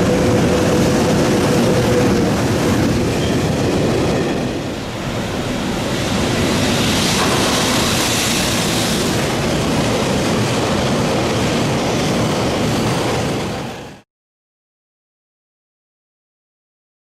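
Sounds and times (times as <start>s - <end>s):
freight train passing: 0.0s - 14.0s.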